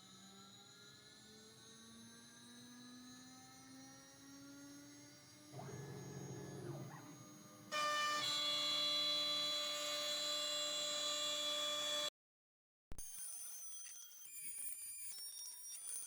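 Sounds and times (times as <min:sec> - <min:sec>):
router machine whining: 0:05.6 - 0:12.1.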